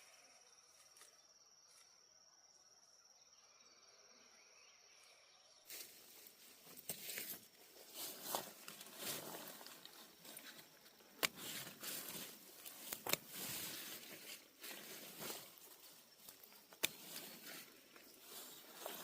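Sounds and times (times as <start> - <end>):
sharp snaps: 11.1 - 11.8, 12.8 - 13.4, 16.3 - 17.3.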